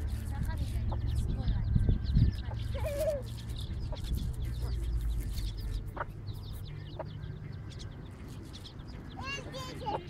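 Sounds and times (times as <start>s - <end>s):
chickens calling: 0.0s - 10.0s
chicks peeping: 0.0s - 10.0s.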